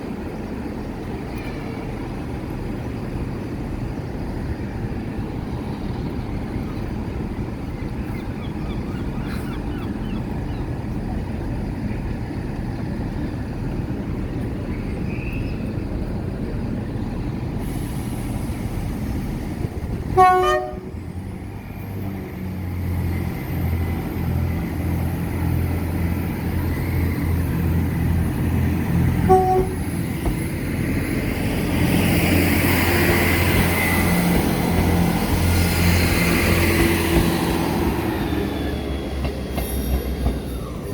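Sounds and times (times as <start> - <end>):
diesel train engine drone: 0.0 - 40.9
train horn blast: 20.1 - 21.0, 29.2 - 30.0.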